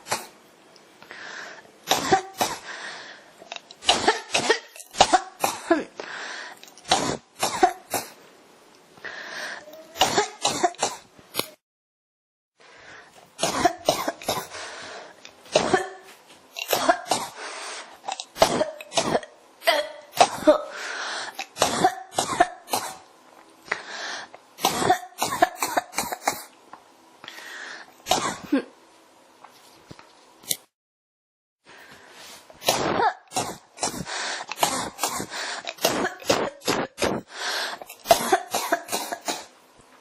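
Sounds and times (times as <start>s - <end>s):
noisy breaths drawn in: 1.0s - 1.7s, 2.6s - 3.4s, 6.0s - 6.8s, 9.0s - 9.7s, 12.6s - 13.2s, 14.4s - 15.2s, 17.3s - 18.0s, 20.7s - 21.4s, 23.7s - 24.4s, 27.2s - 28.0s, 31.6s - 32.6s, 33.7s - 35.8s, 37.0s - 38.0s
person coughing: 1.9s - 2.6s, 3.8s - 6.0s, 6.9s - 8.2s, 9.9s - 11.0s, 13.4s - 14.5s, 15.5s - 17.4s, 18.4s - 20.7s, 21.4s - 23.0s, 24.6s - 26.5s, 28.1s - 28.7s, 32.6s - 39.5s.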